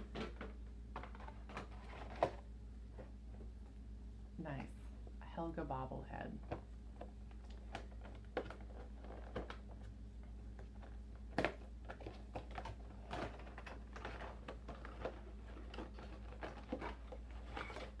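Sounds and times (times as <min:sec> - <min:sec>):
packaging being handled: 0:00.0 - 0:02.4, 0:07.0 - 0:10.0, 0:10.6 - 0:18.0.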